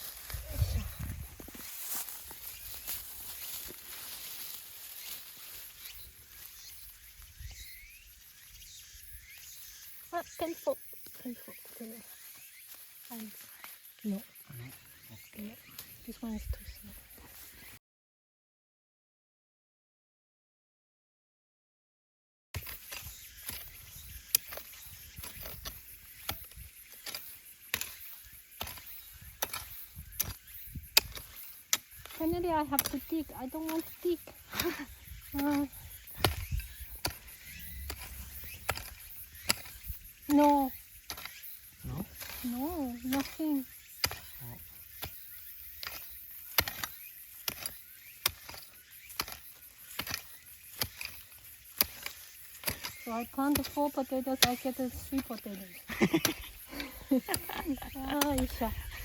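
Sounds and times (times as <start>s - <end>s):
hand tool chopping into soil: 22.6s - 59.0s.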